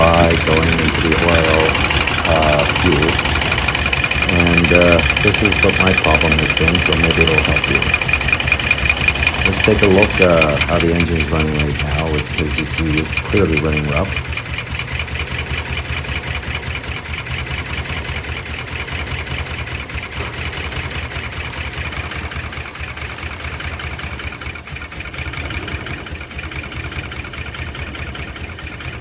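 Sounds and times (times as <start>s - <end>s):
engine idling roughly: 0.0s - 29.0s.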